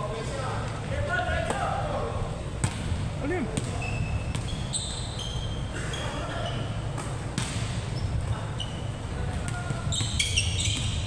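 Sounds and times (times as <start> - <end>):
basketball bouncing: 2.6 - 2.9
sneakers squeaking on court: 3.5 - 11.0.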